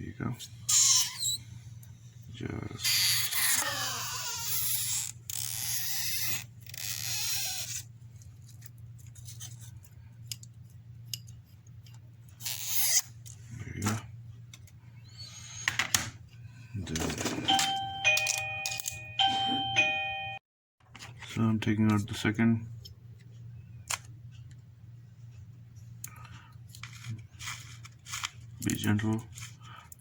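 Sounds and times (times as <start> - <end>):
low steady hum: 7.6 - 30.0.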